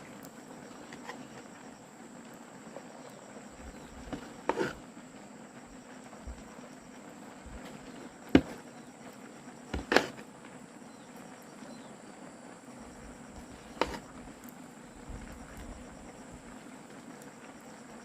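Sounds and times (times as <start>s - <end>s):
steady high hiss: 0.0s - 18.0s
sharp knocks: 8.3s - 8.6s.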